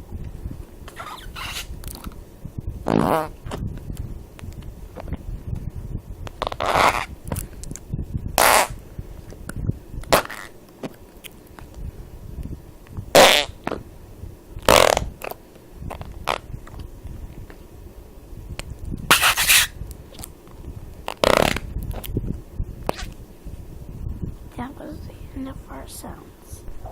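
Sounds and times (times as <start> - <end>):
fart sounds: 0.9 - 1.7, 2.8 - 3.6, 6.4 - 7.1, 8.4 - 8.8, 13.1 - 13.8, 14.6 - 15.3, 15.9 - 16.5, 19.1 - 19.7, 21.1 - 21.7, 22.9 - 23.2.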